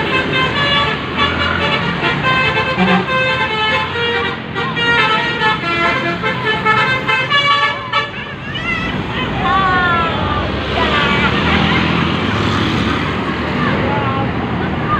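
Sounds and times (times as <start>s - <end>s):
multi-tone vehicle air horn tune: 0.0s - 8.4s.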